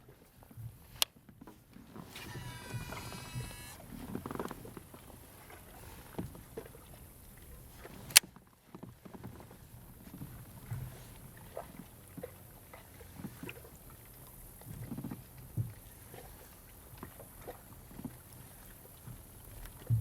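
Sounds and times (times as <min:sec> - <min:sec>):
brief whirring: 0:02.0 - 0:04.7.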